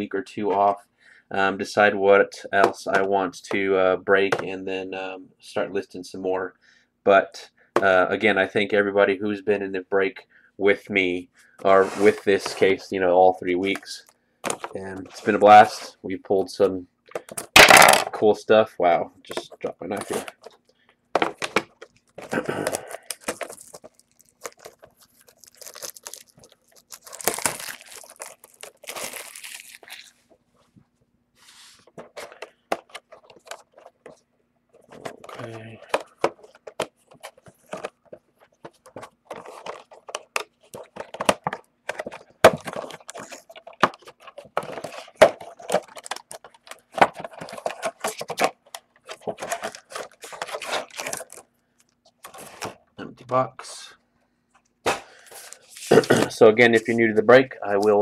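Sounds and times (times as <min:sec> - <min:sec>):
box clicks and knocks: 0:21.2 - 0:22.3, 0:34.9 - 0:51.3
plastic wrapping crinkling and tearing: 0:21.8 - 0:30.3, 0:49.0 - 0:52.6.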